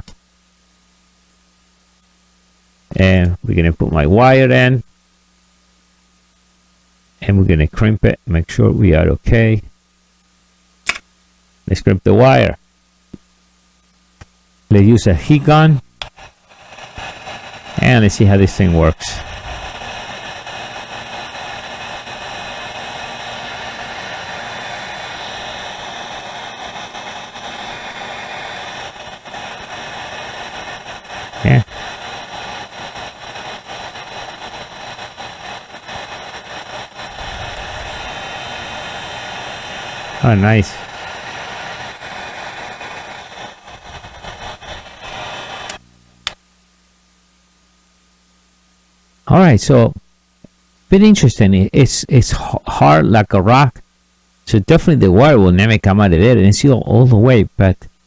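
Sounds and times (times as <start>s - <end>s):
sharp click: 10.8s - 11.1s
heat gun blowing hot air: 15.2s - 45.8s.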